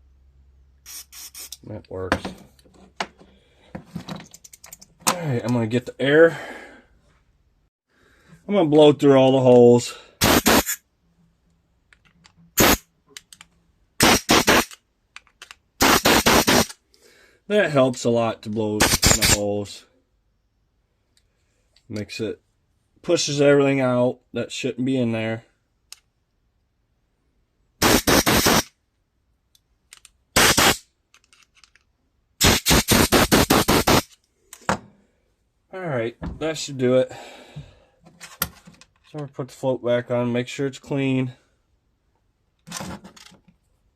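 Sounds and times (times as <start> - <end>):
compressed air blasts hissing: 0.8 - 1.6, 10.2 - 10.8, 12.6 - 12.8, 14.0 - 14.7, 15.8 - 16.8, 27.8 - 28.7, 30.4 - 30.8, 32.4 - 34.1.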